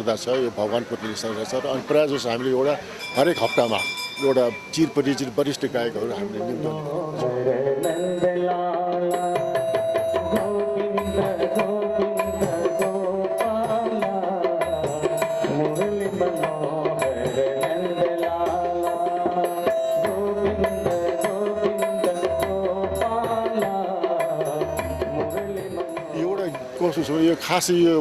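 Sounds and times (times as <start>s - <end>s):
sustained melodic notes: 2.3s - 6.3s
tabla strokes: 8.9s - 27.9s.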